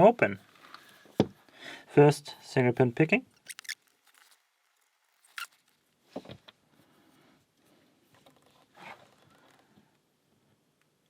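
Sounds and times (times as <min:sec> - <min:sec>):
lock pick clicking and scraping: 0:03.4 - 0:03.8.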